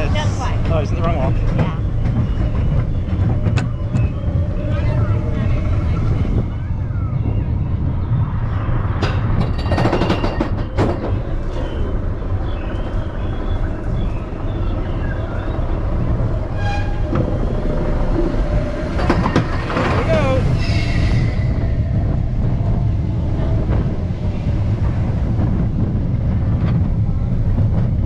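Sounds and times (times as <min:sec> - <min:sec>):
ride vehicle rumbling on track: 0:00.0 - 0:28.0
clacks and rattles: 0:09.0 - 0:11.4, 0:18.1 - 0:20.5.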